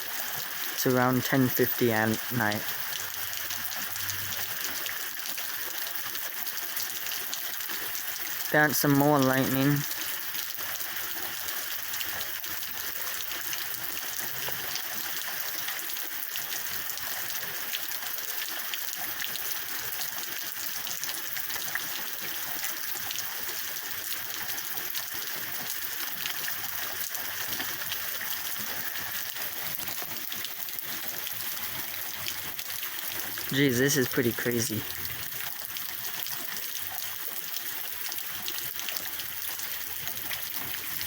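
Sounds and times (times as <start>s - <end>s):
raindrops pattering on surfaces: 0.0s - 41.0s
heavy rain pouring: 0.8s - 4.3s, 26.6s - 32.7s, 33.4s - 35.3s.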